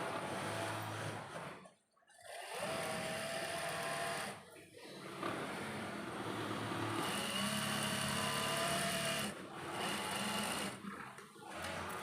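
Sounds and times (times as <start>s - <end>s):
sewing machine running: 2.3s - 4.4s, 5.2s - 12.0s.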